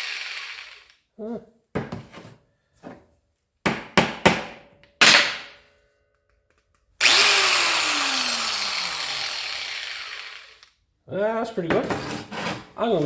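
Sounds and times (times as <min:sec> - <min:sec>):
grinder whining: 0:00.0 - 0:00.9, 0:07.0 - 0:10.8.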